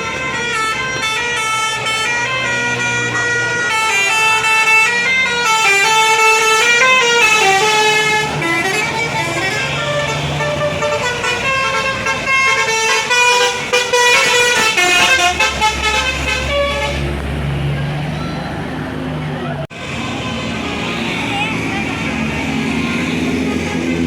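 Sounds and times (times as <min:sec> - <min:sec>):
bus musical horn tune: 0:00.0 - 0:17.2.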